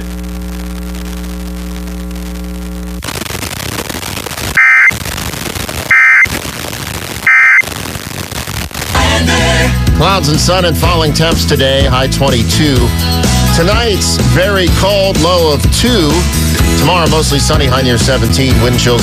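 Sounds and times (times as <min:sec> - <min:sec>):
electrical hum: 0:00.0 - 0:03.3
static hiss: 0:00.0 - 0:09.2
buzzy data bursts: 0:03.0 - 0:05.0, 0:05.6 - 0:06.5, 0:07.2 - 0:07.6.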